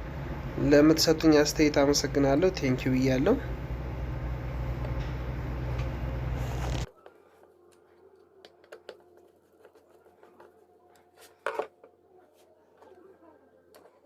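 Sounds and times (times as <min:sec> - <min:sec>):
scraping rub: 0:06.3 - 0:08.3.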